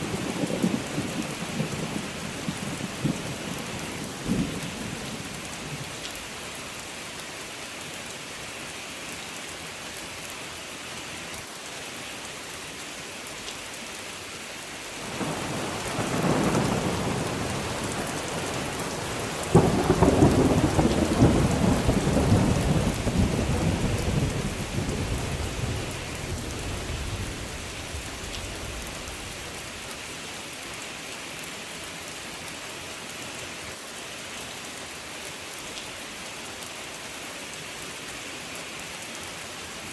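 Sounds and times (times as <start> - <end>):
steady rain falling: 0.0 - 39.9
thunder rumbling: 15.0 - 29.4.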